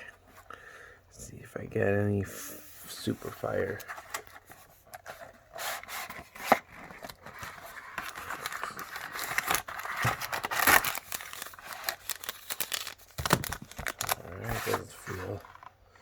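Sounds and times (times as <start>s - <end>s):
plastic packaging crinkling and tearing: 3.6s - 15.7s.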